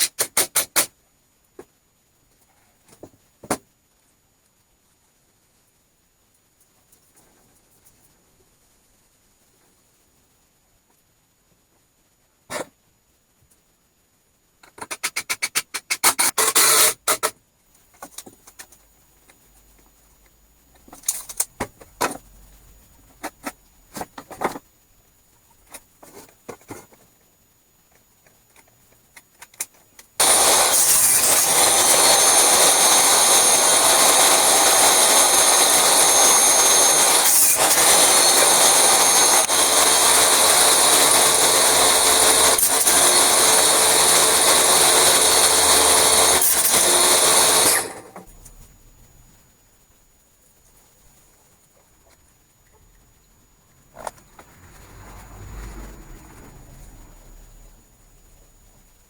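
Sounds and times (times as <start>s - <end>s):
power tool whining: 30.2s - 48.2s.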